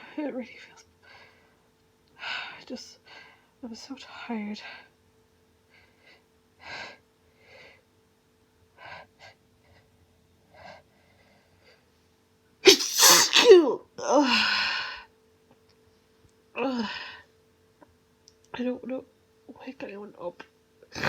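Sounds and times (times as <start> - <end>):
woman sneezing: 12.6 - 14.2
woman sniffling: 12.6 - 15.0.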